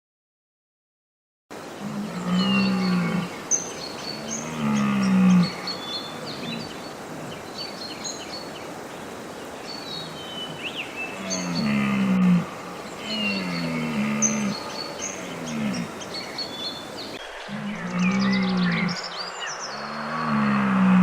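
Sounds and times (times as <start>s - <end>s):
small birds chirping: 1.6s - 21.0s
large animal calling low: 11.2s - 16.0s, 17.2s - 19.1s, 19.8s - 21.0s.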